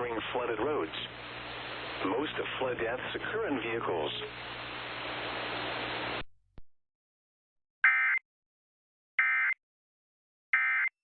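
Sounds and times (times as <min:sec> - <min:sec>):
static hiss: 0:00.0 - 0:06.2.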